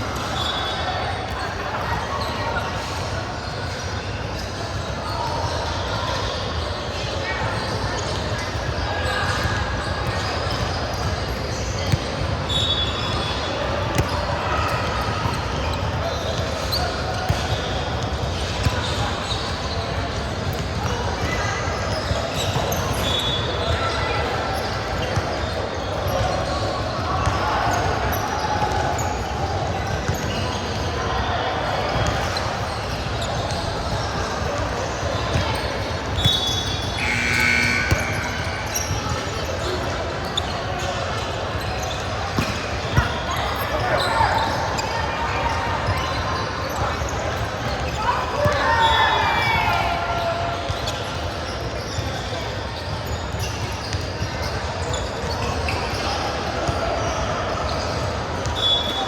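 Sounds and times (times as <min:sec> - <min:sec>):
background chatter: 0:00.0 - 0:59.0
voices in a large hall: 0:00.0 - 0:59.0
ball bouncing in a gym: 0:35.3 - 0:39.9
short high squeak: 0:36.2 - 0:39.8
held high tone: 0:37.0 - 0:38.7.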